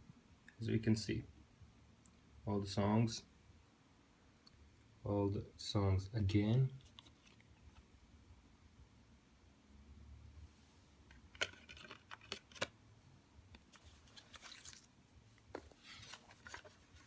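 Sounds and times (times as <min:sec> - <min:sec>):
soft rustling: 0:06.7 - 0:08.0, 0:13.5 - 0:17.0
plastic case clicks: 0:11.1 - 0:12.7.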